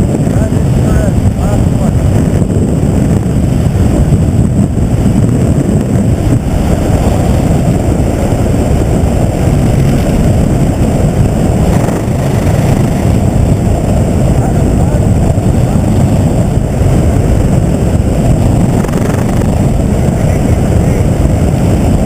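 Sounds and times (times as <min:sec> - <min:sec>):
helicopter low rumble: 0:00.0 - 0:22.0.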